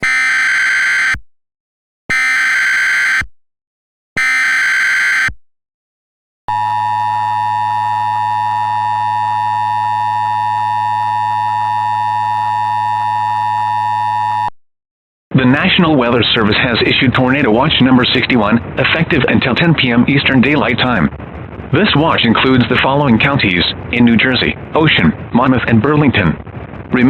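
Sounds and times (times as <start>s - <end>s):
steady warning alarm tone: 0.0s - 1.2s, 2.1s - 3.3s, 4.2s - 5.4s, 6.5s - 14.5s.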